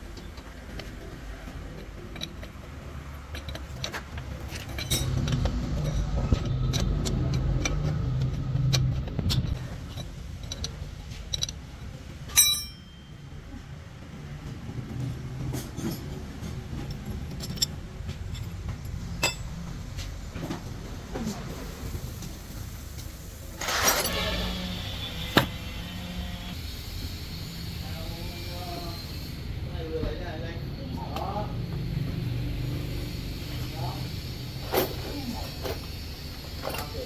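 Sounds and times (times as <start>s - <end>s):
metal tools clinking and knocking: 0.2s - 13.3s, 14.9s - 20.1s.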